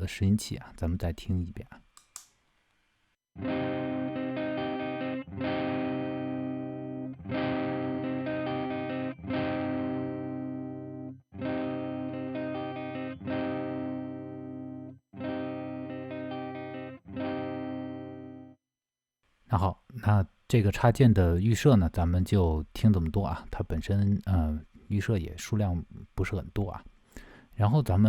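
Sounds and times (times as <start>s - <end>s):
electric guitar chords ringing: 3.4s - 18.6s.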